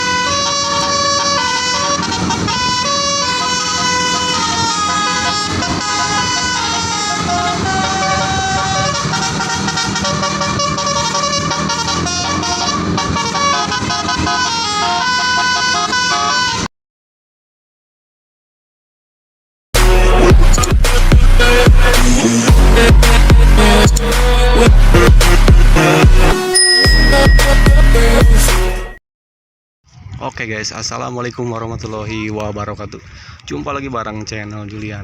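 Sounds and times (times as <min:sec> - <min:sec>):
multi-tone bus horn melody: 0:00.0 - 0:16.7, 0:19.8 - 0:29.0.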